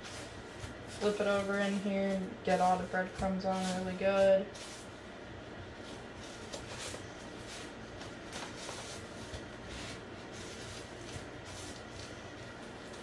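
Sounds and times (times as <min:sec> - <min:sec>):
low steady hum: 0:00.0 - 0:13.0
rustling of dry breadcrumbs: 0:05.7 - 0:13.0.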